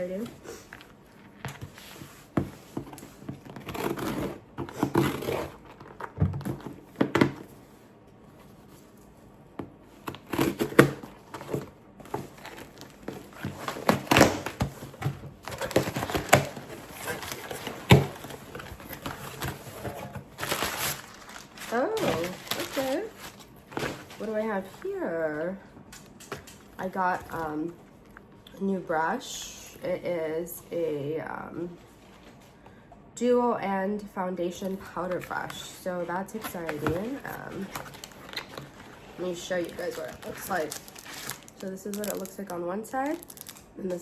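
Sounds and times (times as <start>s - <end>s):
packaging crinkling: 10.0s - 24.9s, 36.2s - 43.8s.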